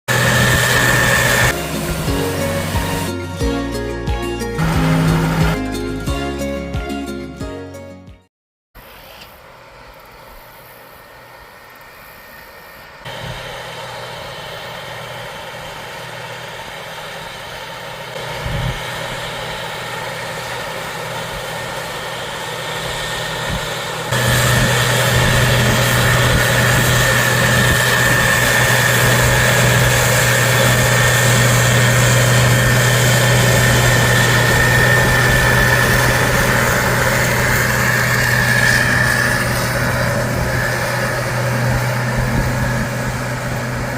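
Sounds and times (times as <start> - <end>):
high whine: 0.1 - 5.9, 8.8 - 43.9
harvest machinery engine running: 0.1 - 6.2, 12.2 - 43.9.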